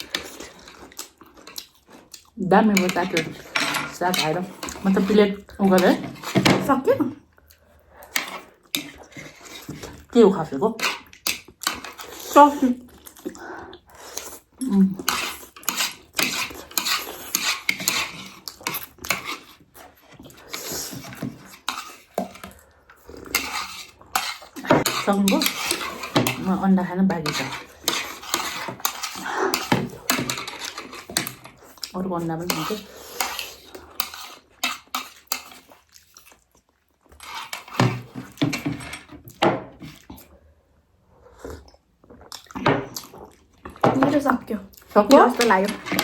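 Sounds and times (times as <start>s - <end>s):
chewing: 0.0s - 3.6s, 11.0s - 26.2s, 33.0s - 37.8s, 41.1s - 43.8s
slurping: 7.4s - 10.1s, 10.8s - 38.8s.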